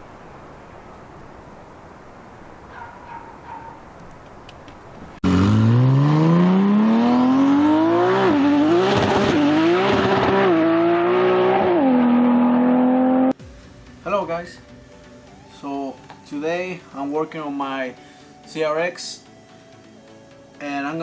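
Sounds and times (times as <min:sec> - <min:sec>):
car engine revving: 0:05.2 - 0:13.4.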